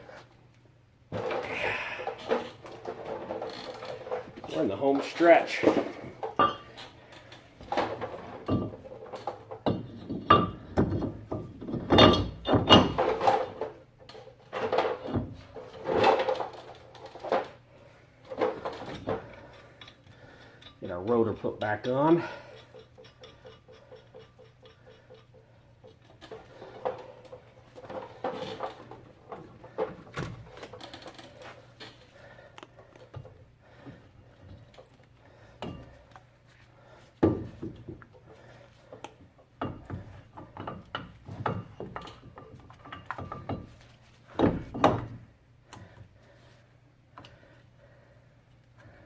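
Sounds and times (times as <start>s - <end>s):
metal clunks and scrapes: 7.6s - 17.6s, 39.6s - 45.2s.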